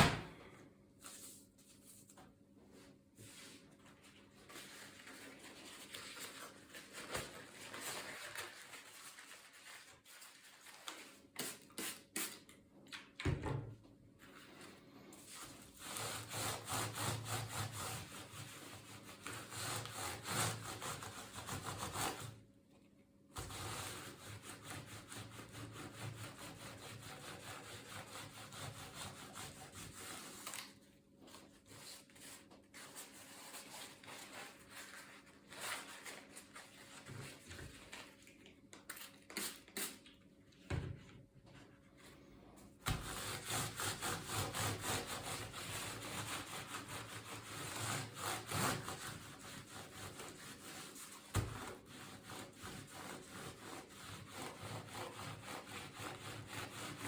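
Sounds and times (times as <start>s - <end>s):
rubbing strokes on laptop: 15.2s - 22.3s, 23.4s - 30.4s, 42.9s - 57.0s.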